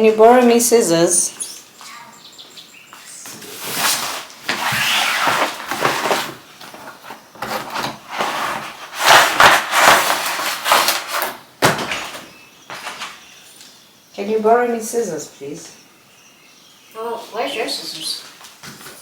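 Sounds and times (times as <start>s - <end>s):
packaging crinkling and scraping: 3.4s - 13.2s.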